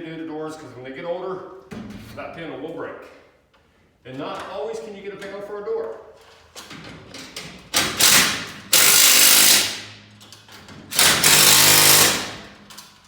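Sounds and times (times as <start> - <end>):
cordless impact driver running: 8.0 - 9.8, 11.0 - 12.4.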